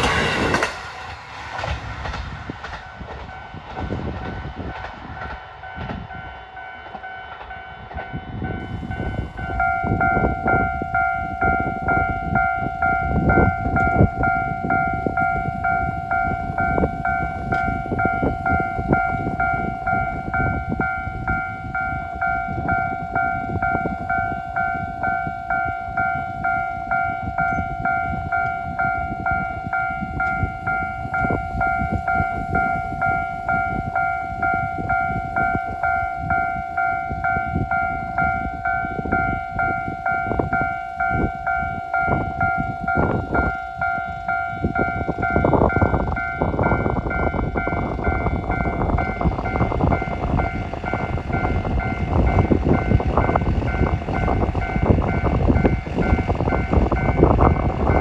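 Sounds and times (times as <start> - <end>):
low rumble: 0.0 - 6.2.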